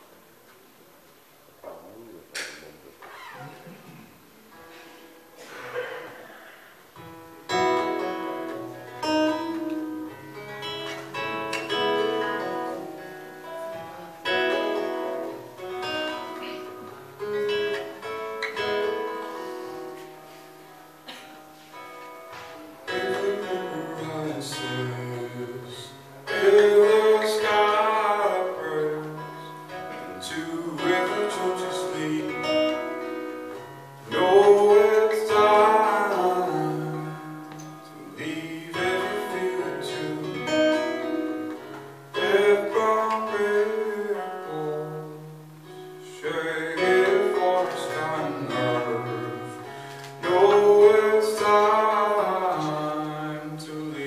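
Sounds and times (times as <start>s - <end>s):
strummed acoustic guitar: 3.6s - 54.0s
man singing: 22.8s - 33.2s, 34.0s - 54.0s.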